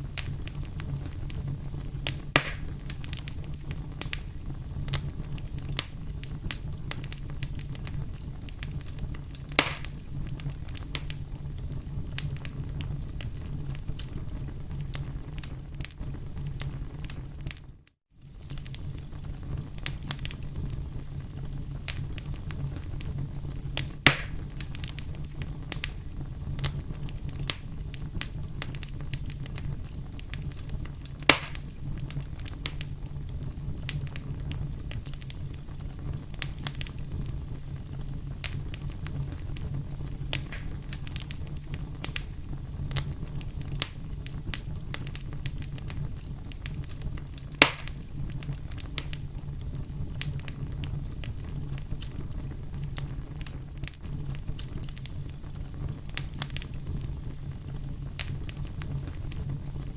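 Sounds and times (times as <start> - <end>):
campfire crackling: 0.0 - 59.9
loud wood pops: 2.3 - 2.7, 9.6 - 10.0, 24.0 - 24.4, 31.3 - 31.7, 40.4 - 40.9, 47.6 - 48.0.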